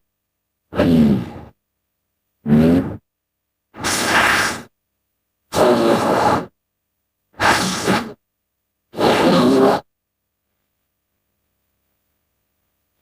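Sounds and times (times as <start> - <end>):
breathy raspy creature calls: 5.5 - 6.5, 9.0 - 9.9.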